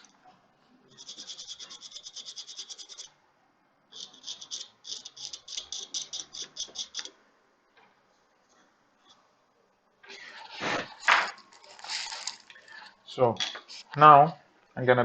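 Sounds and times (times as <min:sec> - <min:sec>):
rapid scrubbing on small part: 0:00.9 - 0:03.1, 0:04.0 - 0:07.1.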